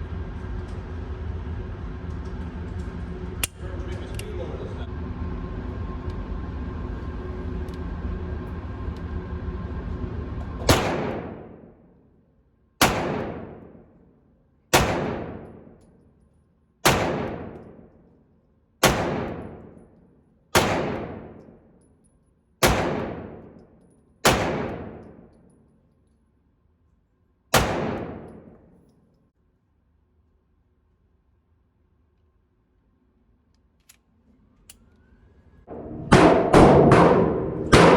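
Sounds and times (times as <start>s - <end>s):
steady noise with faint hum: 0.0s - 37.9s
pistol shots: 10.7s - 11.6s, 12.8s - 13.9s, 14.7s - 15.8s, 16.8s - 17.9s, 18.8s - 19.8s, 20.5s - 21.6s, 22.6s - 23.6s, 24.2s - 25.3s, 27.5s - 28.7s, 35.7s - 37.9s.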